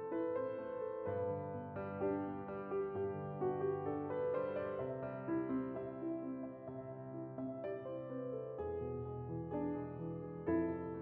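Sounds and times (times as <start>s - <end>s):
soft piano music: 0.0s - 11.0s.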